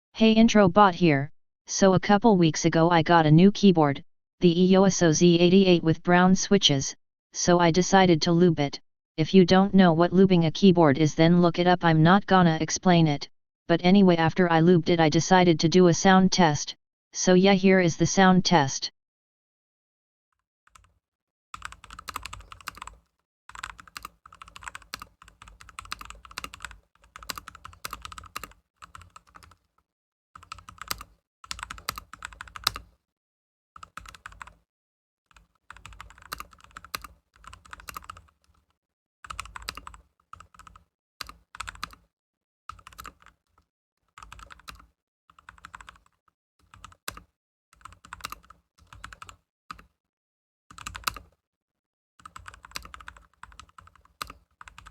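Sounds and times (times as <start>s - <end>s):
mechanical keyboard typing: 21.6s - 29.6s, 30.4s - 32.8s, 33.8s - 34.6s, 35.4s - 38.4s, 39.3s - 42.0s, 42.7s - 43.4s, 44.2s - 44.8s, 45.4s - 47.2s, 47.8s - 49.4s, 50.7s - 51.4s, 52.2s - 54.9s.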